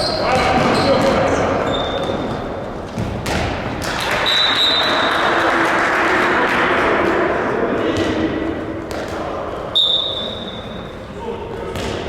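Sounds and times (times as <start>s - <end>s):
shoe squeaks: 0.0s - 2.4s, 9.8s - 10.8s
ball bouncing in a hall: 0.0s - 12.0s.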